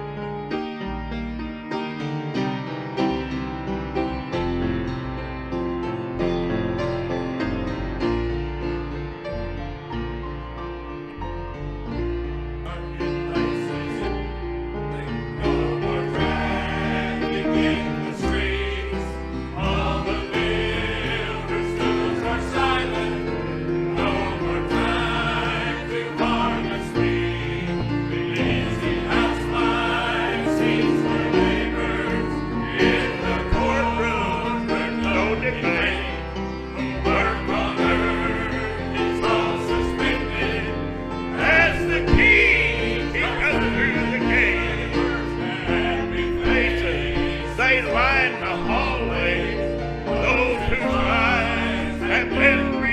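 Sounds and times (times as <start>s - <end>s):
instrumental accompaniment: 0.0s - 52.9s
group singing a gospel hymn: 12.4s - 52.9s.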